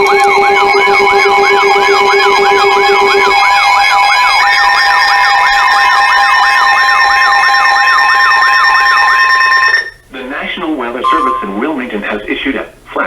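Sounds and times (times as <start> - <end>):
steady alarm tones: 11.0 - 11.9.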